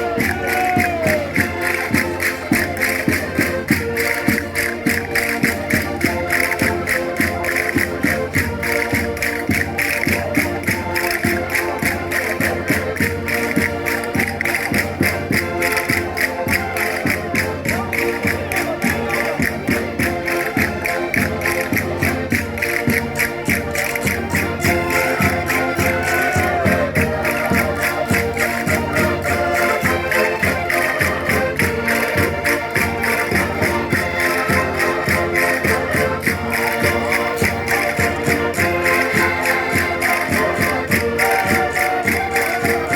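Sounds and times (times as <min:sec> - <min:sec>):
concertinas playing dance tune: 0:00.0 - 0:42.9
sharp percussion beat: 0:00.0 - 0:42.9.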